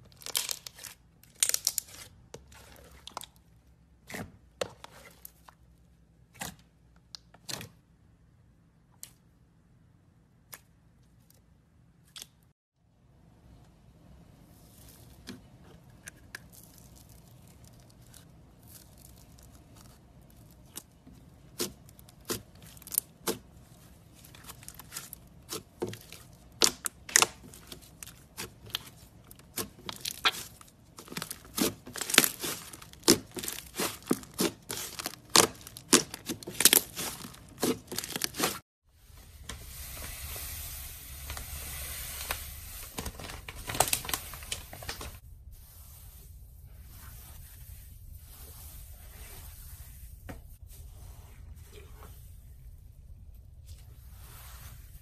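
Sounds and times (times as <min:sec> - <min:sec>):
slime popping and crackling: 0:24.2 - 0:38.6
steady hiss: 0:39.3 - 0:43.0.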